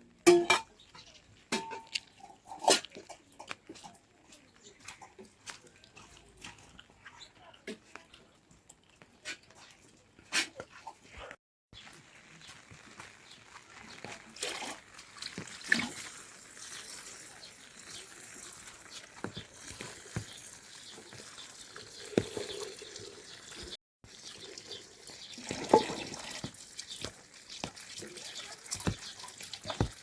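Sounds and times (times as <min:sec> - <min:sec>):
water trickling and splashing: 0:11.8 - 0:30.0.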